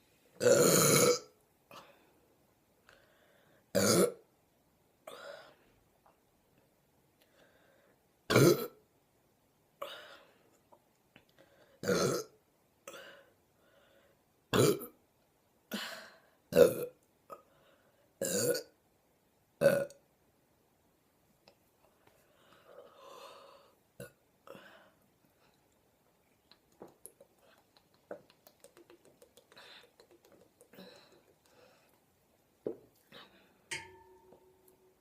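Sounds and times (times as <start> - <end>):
woman burping: 0.4 - 1.3, 3.8 - 4.2, 8.3 - 8.8, 11.8 - 12.3.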